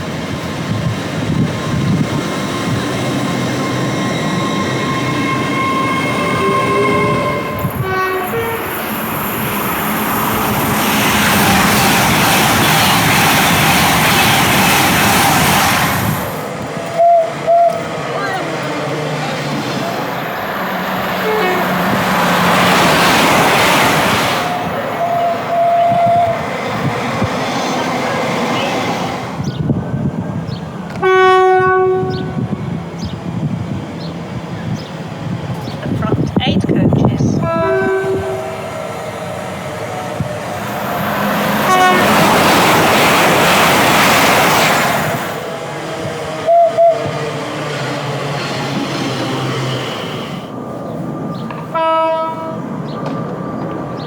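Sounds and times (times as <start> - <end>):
train passing at speed: 0.0 - 54.0
train horn: 3.6 - 8.7, 16.8 - 18.5, 21.2 - 22.1, 24.4 - 26.4, 30.9 - 32.6, 37.2 - 38.7, 41.4 - 42.4, 46.4 - 47.1, 51.7 - 52.7.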